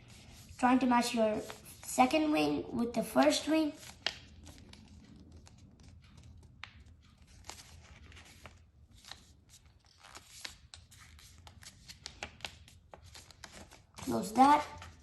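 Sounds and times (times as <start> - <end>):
paper rustling and crinkling: 3.7 - 15.0
small paper folding clicks: 3.8 - 14.1.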